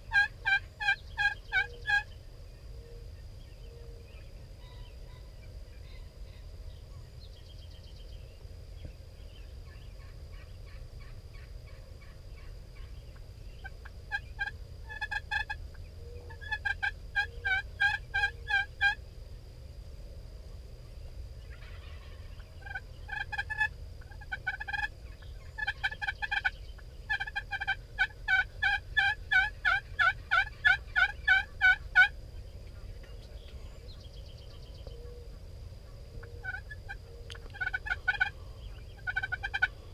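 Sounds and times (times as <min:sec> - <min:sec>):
turkey yelping: 0:00.1 - 0:02.1, 0:14.1 - 0:15.6, 0:16.3 - 0:19.0, 0:21.5 - 0:32.1, 0:35.8 - 0:38.4, 0:39.0 - 0:39.7.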